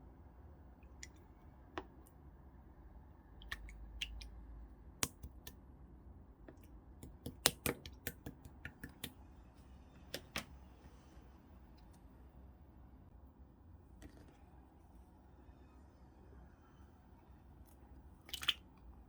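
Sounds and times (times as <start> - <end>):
slime clicking pops: 7.0 - 9.2.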